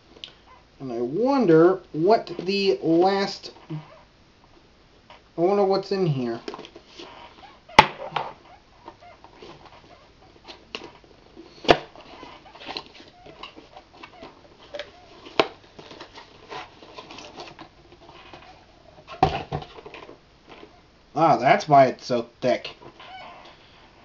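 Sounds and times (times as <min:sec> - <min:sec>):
packaging crinkling and rustling: 0:11.9 - 0:20.7.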